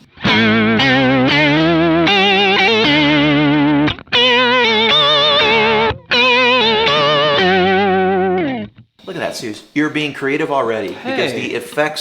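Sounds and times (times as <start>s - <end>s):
electric guitar with vibrato: 0.0s - 9.1s.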